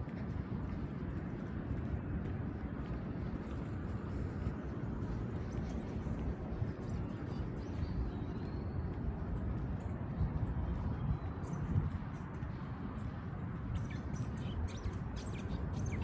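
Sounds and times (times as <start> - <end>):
low rumble of wind or traffic: 0.0 - 16.0
faint bird chirps: 13.7 - 16.0.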